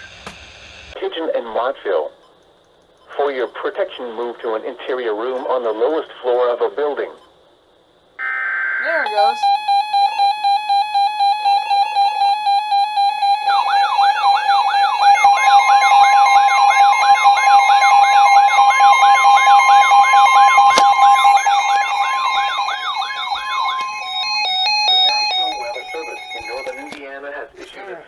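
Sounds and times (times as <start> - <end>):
weather radio beeping: 0.0 - 1.0, 9.0 - 27.1
warbling siren-like alarm: 8.2 - 27.0
steady attention tone: 8.8 - 27.0.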